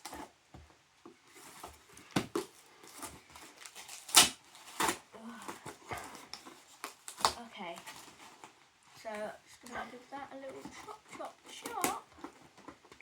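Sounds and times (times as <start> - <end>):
cardboard rustling and clicking: 0.0 - 13.0.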